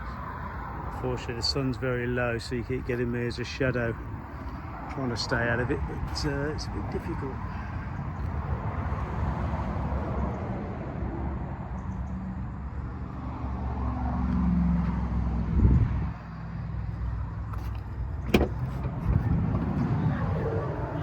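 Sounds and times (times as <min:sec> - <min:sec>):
road traffic rumble: 0:00.0 - 0:21.0
thump: 0:18.2 - 0:18.6.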